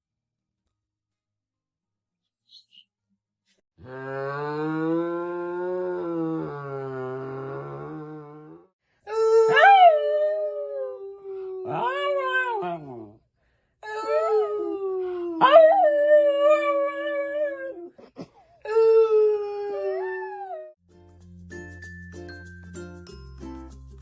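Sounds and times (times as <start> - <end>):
dog howling: 9.3 - 13.1.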